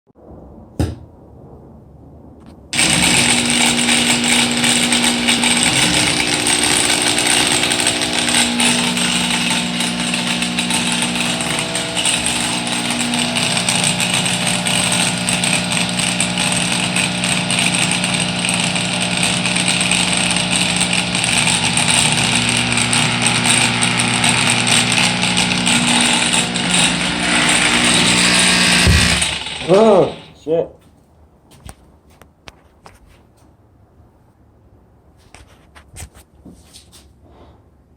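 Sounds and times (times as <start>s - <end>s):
angle grinder running: 2.8s - 30.4s.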